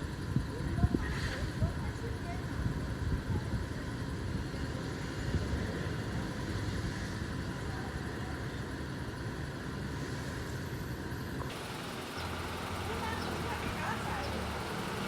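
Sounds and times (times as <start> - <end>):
fire truck engine rumbling: 7.2 - 15.0.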